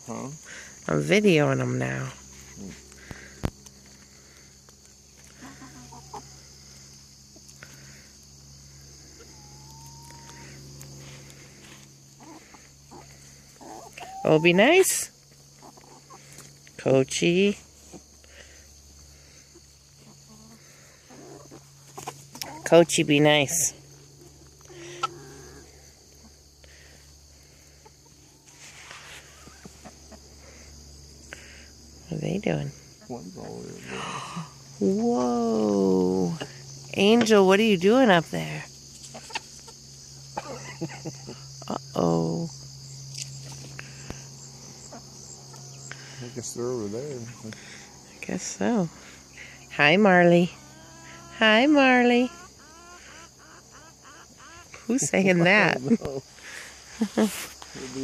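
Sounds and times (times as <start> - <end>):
insects trilling: 0.0 - 58.0
hens clucking: 4.8 - 6.7, 8.9 - 16.7, 19.0 - 30.8, 38.4 - 41.7, 43.4 - 58.0.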